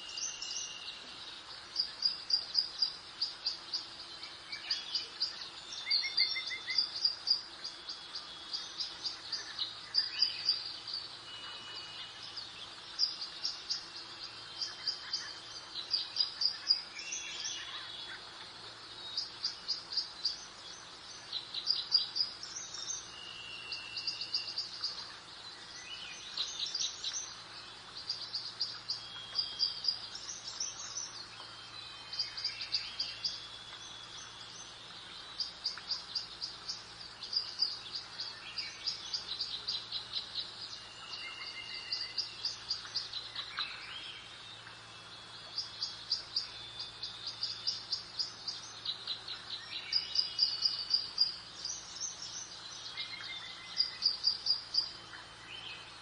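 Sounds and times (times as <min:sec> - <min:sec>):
soft outdoor hiss: 0:00.0 - 0:56.0
songbirds chirping: 0:00.0 - 0:56.0.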